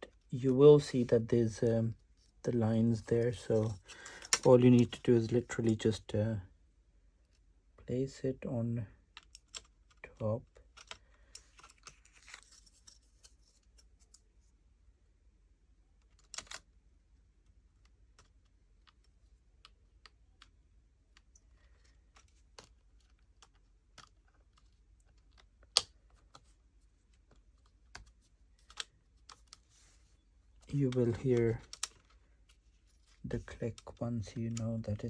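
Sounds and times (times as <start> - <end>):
light clicks and taps: 9.0 - 14.3, 17.4 - 35.0.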